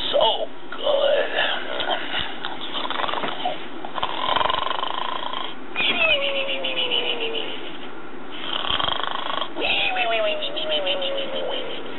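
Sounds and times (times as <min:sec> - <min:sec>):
toy rasping snore: 0:02.7 - 0:05.6, 0:08.4 - 0:09.6.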